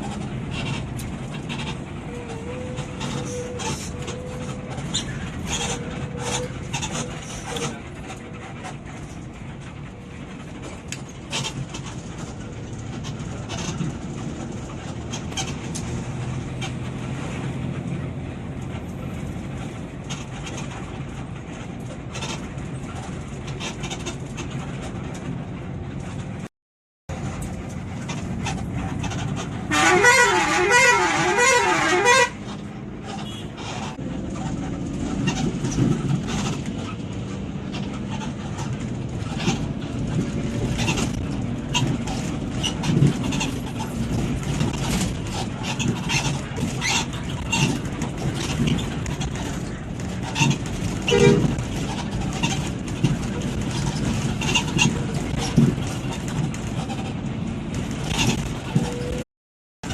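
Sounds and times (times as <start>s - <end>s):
bus engine running: 0.0s - 26.5s, 27.1s - 59.2s
traffic noise: 0.0s - 26.5s, 27.1s - 59.9s
warbling bus horn tune: 29.5s - 33.6s, 51.0s - 51.6s.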